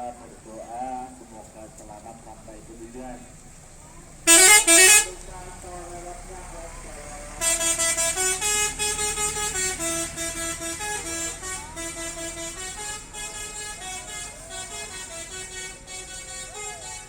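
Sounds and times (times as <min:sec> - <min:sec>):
bus horn playing tune: 0:04.2 - 0:05.2, 0:07.3 - 0:17.0.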